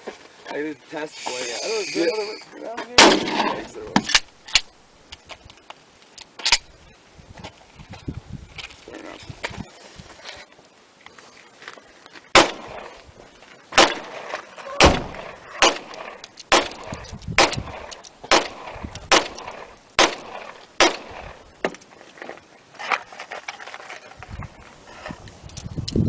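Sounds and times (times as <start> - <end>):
gunshots: 3.0 - 3.7, 12.4 - 13.0, 13.8 - 21.4.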